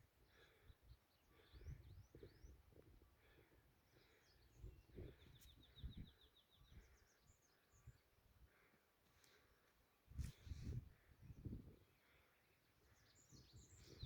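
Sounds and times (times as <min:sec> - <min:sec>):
faint birdsong: 0:00.0 - 0:14.0
low rumbling wind: 0:10.1 - 0:12.0.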